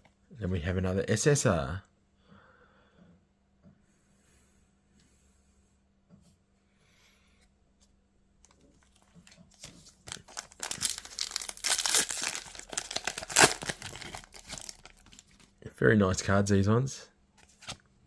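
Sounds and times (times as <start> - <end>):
foil wrapper tearing and crinkling: 10.0 - 15.5.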